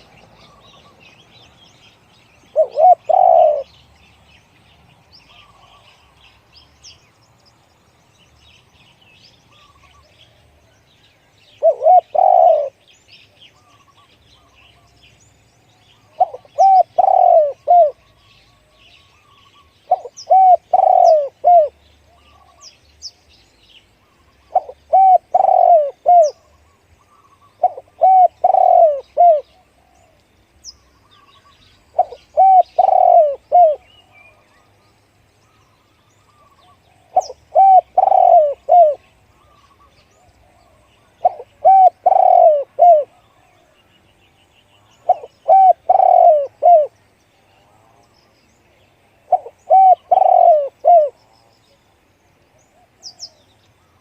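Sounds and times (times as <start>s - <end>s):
dove cooing: 2.5s - 3.7s, 11.6s - 12.8s, 16.0s - 22.6s, 24.4s - 30.2s, 31.9s - 34.4s, 36.2s - 43.7s, 44.9s - 47.0s, 49.2s - 51.2s.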